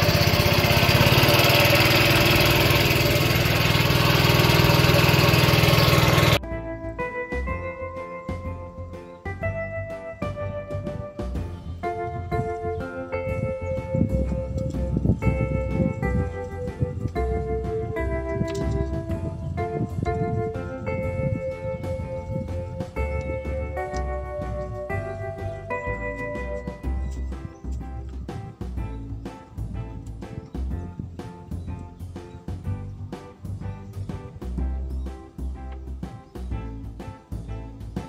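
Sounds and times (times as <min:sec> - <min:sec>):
small engine running: 0:00.0 - 0:06.4, 0:11.4 - 0:27.2
synth chords over low beat: 0:00.0 - 0:38.0.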